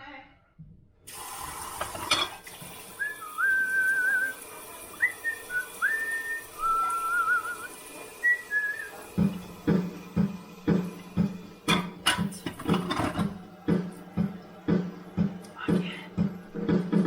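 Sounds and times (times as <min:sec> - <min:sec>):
person whistling a tune: 0:03.0 - 0:09.4
low thumping beat: 0:09.1 - 0:17.0.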